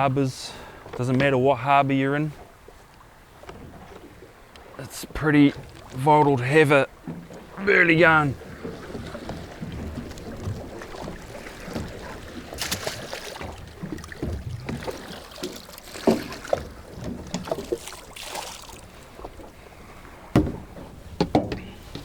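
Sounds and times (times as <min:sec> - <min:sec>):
gear knocking against boat: 0:05.4 - 0:22.0
wind buffeting microphone: 0:06.9 - 0:22.0.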